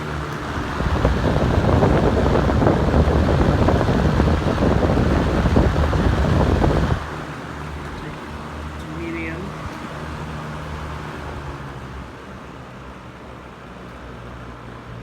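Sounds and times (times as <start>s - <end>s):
box fan humming: 0.0s - 11.3s
wind noise on microphone: 0.4s - 7.2s.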